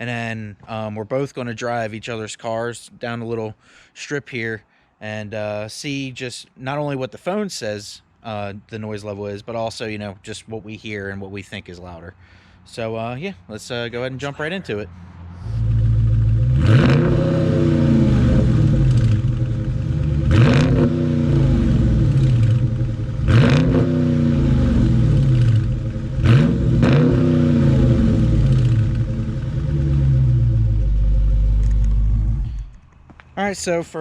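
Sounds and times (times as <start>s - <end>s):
car engine idling and revving: 15.1s - 32.8s.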